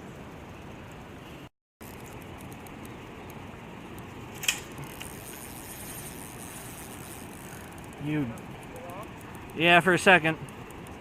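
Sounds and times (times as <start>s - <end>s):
sharp click: 4.3s - 5.1s.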